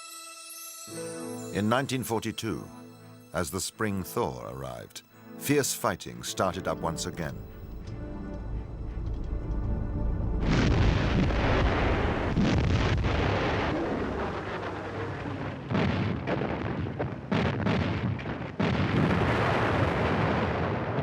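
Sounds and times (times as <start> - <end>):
explosions: 10.0 - 21.0.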